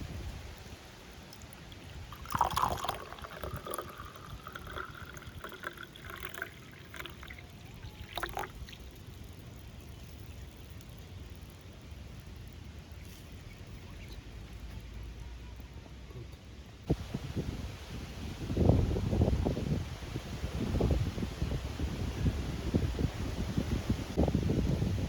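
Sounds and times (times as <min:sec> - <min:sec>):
liquid pouring into a cup: 0:01.2 - 0:11.5.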